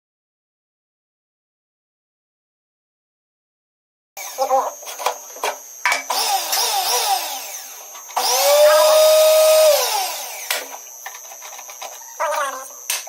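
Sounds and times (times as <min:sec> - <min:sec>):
small electric motor whining: 0:04.2 - 0:13.0.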